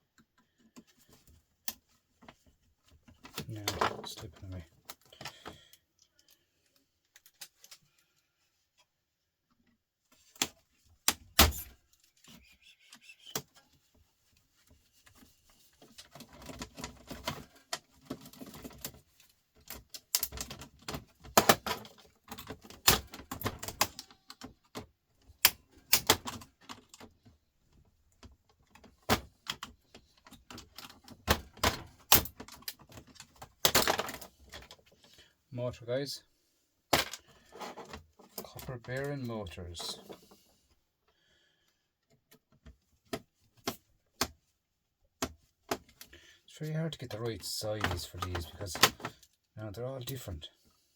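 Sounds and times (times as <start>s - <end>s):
small parts clicking and rattling: 14.9s - 27.3s.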